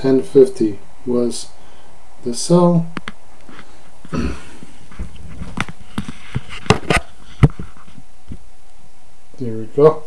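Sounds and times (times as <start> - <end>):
light rustling: 2.9 - 8.5.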